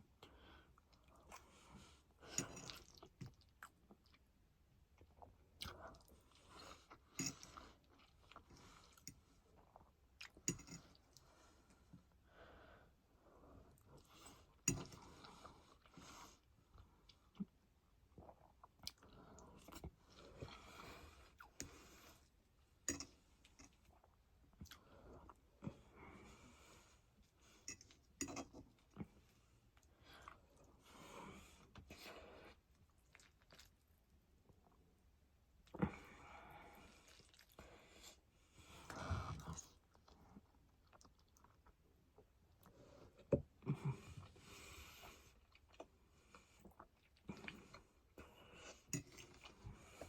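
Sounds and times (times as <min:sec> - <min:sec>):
person chewing food: 0:31.3 - 0:33.8, 0:38.8 - 0:50.0.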